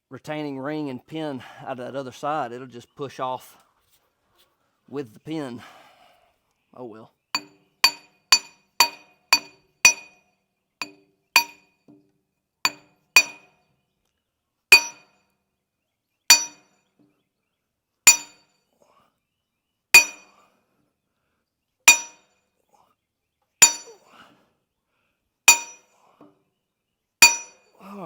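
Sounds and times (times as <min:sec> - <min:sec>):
hammer striking steel: 0:07.4 - 0:10.2, 0:10.8 - 0:11.6, 0:12.7 - 0:13.5, 0:14.7 - 0:15.1, 0:16.3 - 0:16.6, 0:18.1 - 0:18.4, 0:20.0 - 0:20.3, 0:21.9 - 0:22.2, 0:23.6 - 0:24.0, 0:25.5 - 0:25.8, 0:27.2 - 0:27.6.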